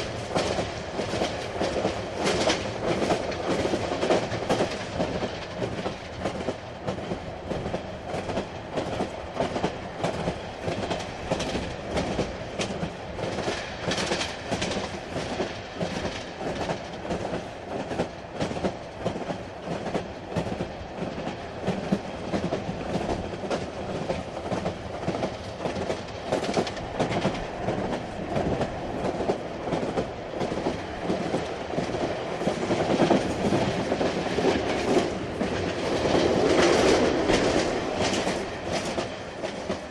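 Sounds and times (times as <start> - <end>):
train rumbling on rails: 0.0 - 39.9
wheels clickety-clack over rail joints: 0.0 - 39.9.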